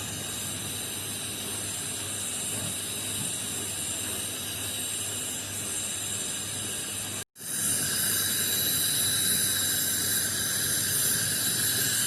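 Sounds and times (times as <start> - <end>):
torch flame hissing: 0.0 - 12.0.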